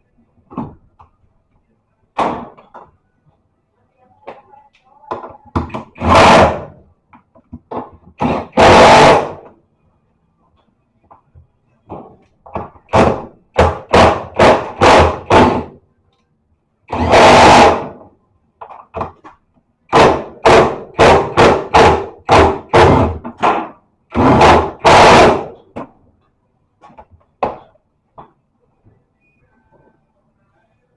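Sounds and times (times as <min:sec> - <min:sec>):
loud knocks and thuds: 0:11.9 - 0:15.8, 0:19.9 - 0:25.9.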